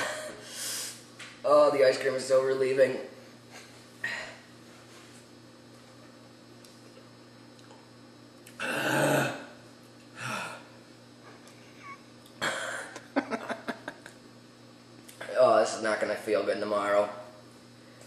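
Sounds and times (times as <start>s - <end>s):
man burping: 8.5s - 9.6s, 12.4s - 13.1s.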